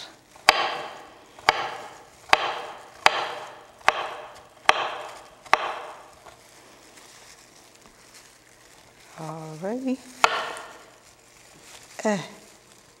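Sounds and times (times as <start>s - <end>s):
knife chopping carrots on board: 0.4s - 6.2s, 10.2s - 10.9s.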